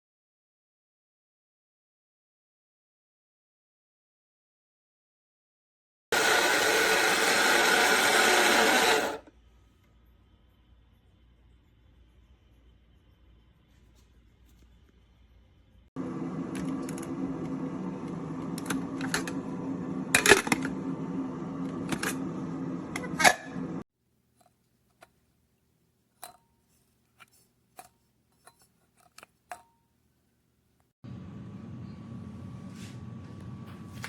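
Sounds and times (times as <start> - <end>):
spice grinder motor running: 6.2 - 9.3, 16.0 - 23.8
steady hum: 15.5 - 23.8.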